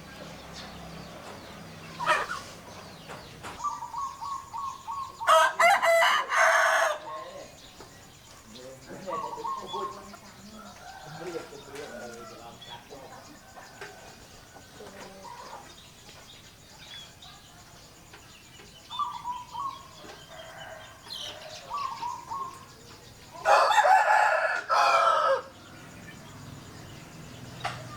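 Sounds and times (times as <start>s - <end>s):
chickens clucking: 0.0s - 27.9s
rooster crowing: 5.2s - 7.5s, 9.7s - 12.7s, 19.9s - 22.5s, 23.3s - 26.0s.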